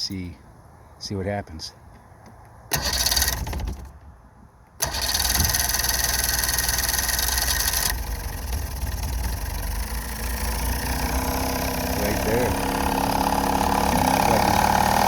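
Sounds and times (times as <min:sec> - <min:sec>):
outboard motor starting and idling: 0:02.7 - 0:04.0, 0:04.8 - 0:15.0.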